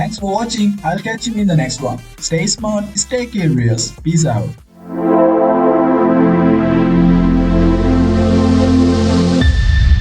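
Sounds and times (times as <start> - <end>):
held synthesizer chords: 4.5 - 9.4
deep bass: 5.5 - 10.0.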